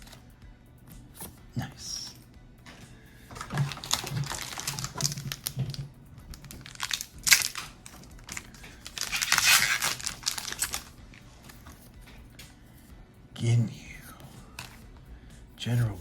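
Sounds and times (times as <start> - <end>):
foil wrapper crinkling and tearing: 3.3 - 11.7.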